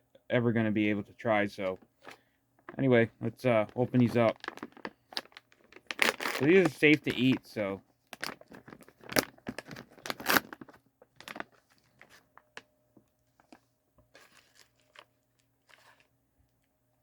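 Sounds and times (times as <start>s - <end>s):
snack bag tearing and crinkling: 3.8s - 7.6s, 8.2s - 11.6s.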